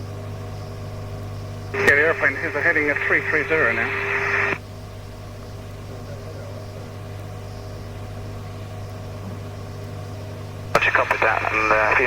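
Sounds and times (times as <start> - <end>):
receiver hum and hiss: 0.0 - 12.0
radio transmission: 1.8 - 4.6, 10.7 - 12.0.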